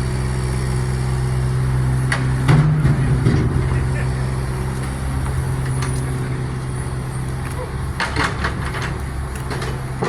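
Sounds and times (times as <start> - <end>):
vehicle engine idling: 0.0 - 10.0.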